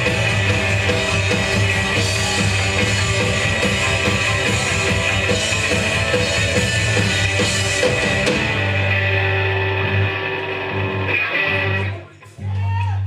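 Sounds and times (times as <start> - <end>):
drums and cymbals: 0.0 - 9.0
held guitar and bass chord: 0.0 - 12.1
punk band playing live: 0.0 - 13.0.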